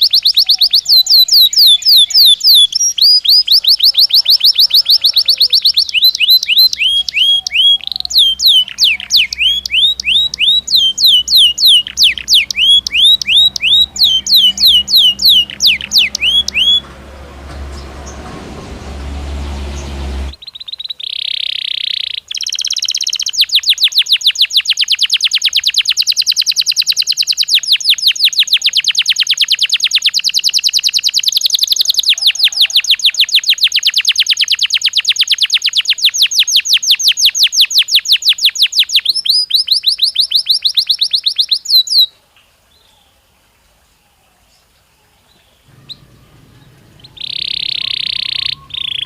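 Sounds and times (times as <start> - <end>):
canary singing trill: 0.0 - 42.1, 45.4 - 49.0
noisy hum: 9.4 - 20.4, 45.7 - 49.0.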